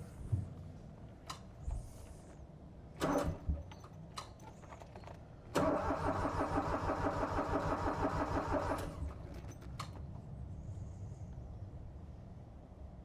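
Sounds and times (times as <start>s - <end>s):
diesel engine turning over: 5.5s - 9.5s.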